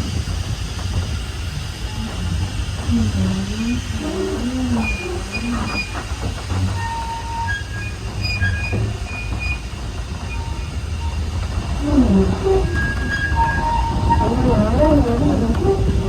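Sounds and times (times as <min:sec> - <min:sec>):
train rumbling on track: 0:00.0 - 0:16.0
wheel squeals: 0:01.8 - 0:16.0.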